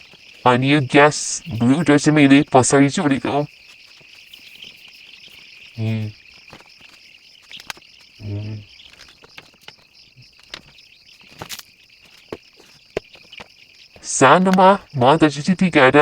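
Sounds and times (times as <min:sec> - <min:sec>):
chicks chirping: 0:00.0 - 0:16.0
man humming: 0:05.8 - 0:06.2, 0:08.2 - 0:08.7.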